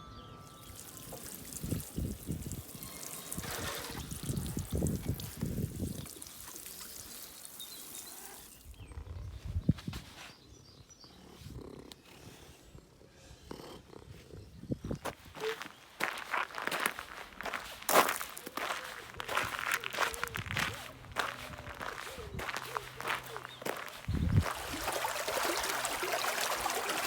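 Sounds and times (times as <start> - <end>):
water running with a hiss: 0.5 - 8.8, 23.3 - 27.0.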